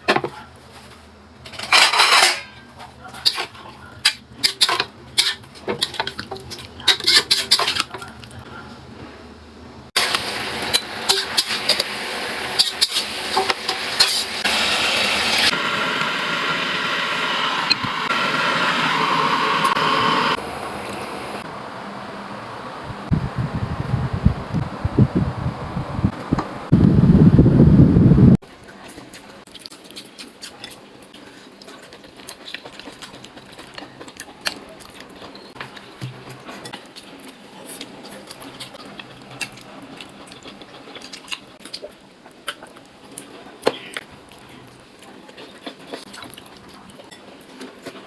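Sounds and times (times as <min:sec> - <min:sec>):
steady cooking hiss: 0:00.0 - 0:23.2
utensils clinking against dishes: 0:01.5 - 0:08.2, 0:10.7 - 0:11.8.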